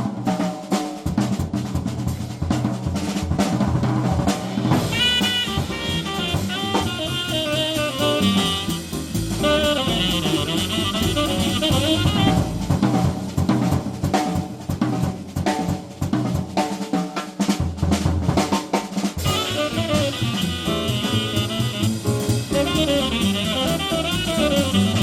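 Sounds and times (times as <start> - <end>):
drum kit solo: 0.0 - 25.0
tenor saxophone: 4.8 - 12.7, 19.2 - 25.0.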